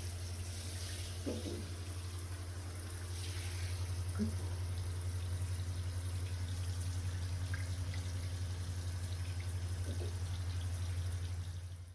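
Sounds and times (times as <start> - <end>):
faint water drips: 0.4 - 11.9.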